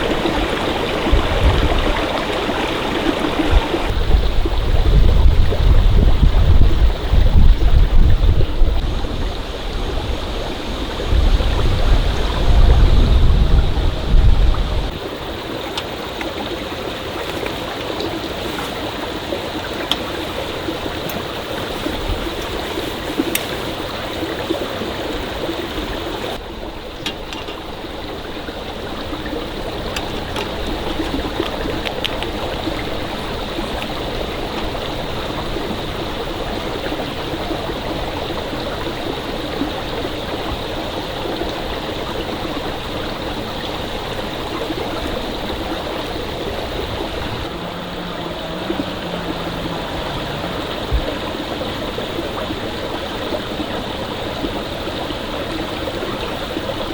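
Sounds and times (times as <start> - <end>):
stream water flowing: 0.0 - 56.9
faint clicks: 19.7 - 23.8.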